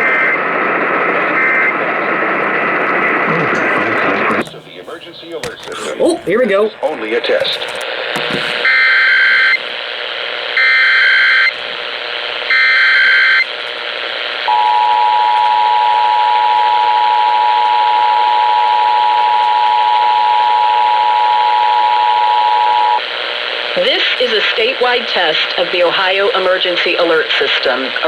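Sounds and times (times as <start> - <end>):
radio hiss: 0.0 - 14.5, 23.0 - 28.0.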